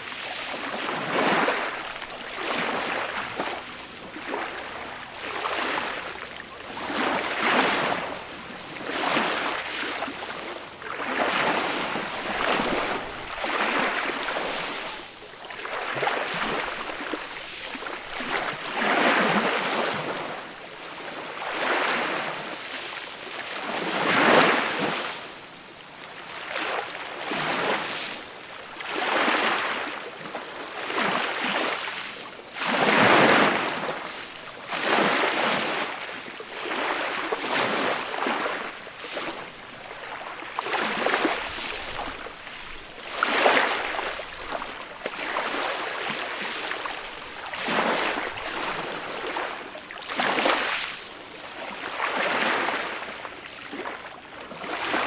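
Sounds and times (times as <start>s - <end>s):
gentle waves washing ashore: 0.0s - 55.0s.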